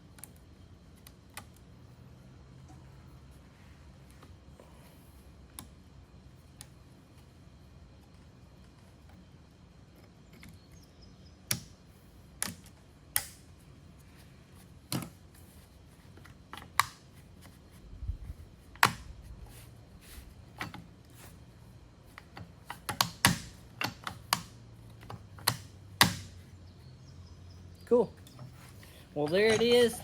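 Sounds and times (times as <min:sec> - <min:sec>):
faint low hum: 0:00.0 - 0:30.0.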